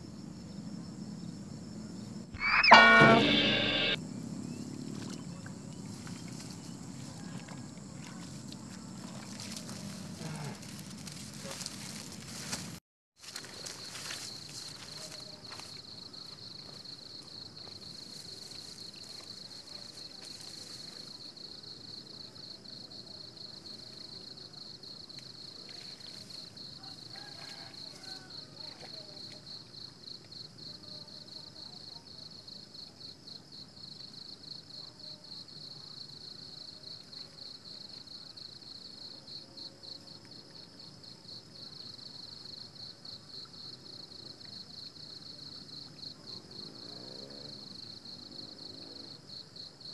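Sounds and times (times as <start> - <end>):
insects chirring: 0.4 - 7.0.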